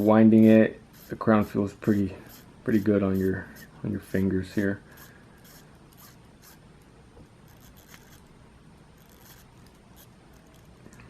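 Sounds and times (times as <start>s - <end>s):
watch crown clicking and scraping: 7.4s - 8.3s, 9.0s - 10.9s.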